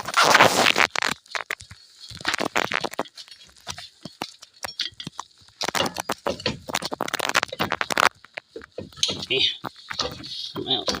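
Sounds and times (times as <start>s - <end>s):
hand tool clinking on metal: 3.0s - 6.8s, 8.6s - 11.0s.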